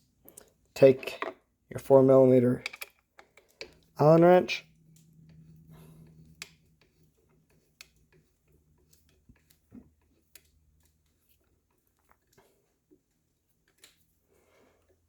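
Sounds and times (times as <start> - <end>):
small clicks of allen wrench: 2.6 - 3.9.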